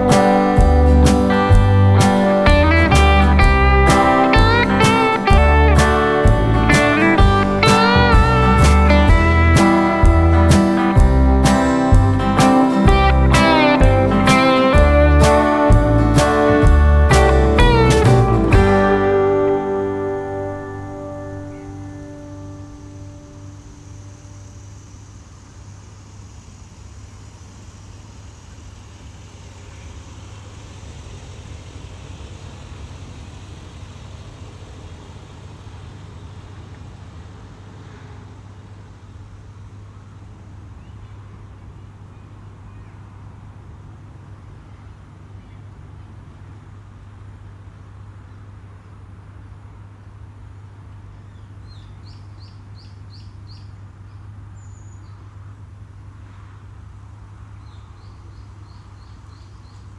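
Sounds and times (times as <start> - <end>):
steady low rumble: 0.0 - 39.6
bird chirping: 51.3 - 55.2, 57.6 - 59.9.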